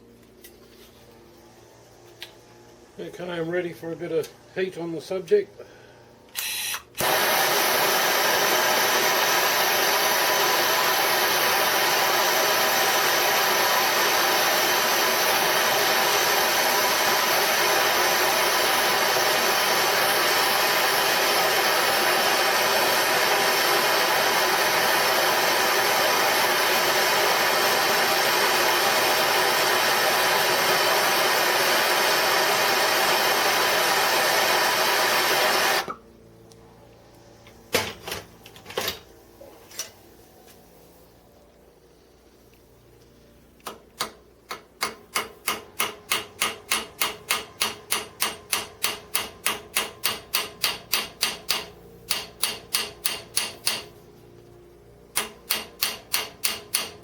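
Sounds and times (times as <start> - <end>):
heating tool hissing: 6.4 - 36.0.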